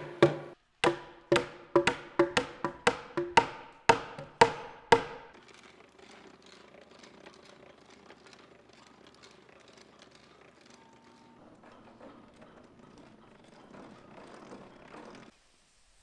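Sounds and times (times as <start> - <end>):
mallet striking chisel: 0.0 - 5.4
faint ticks and scrapes: 5.4 - 15.6.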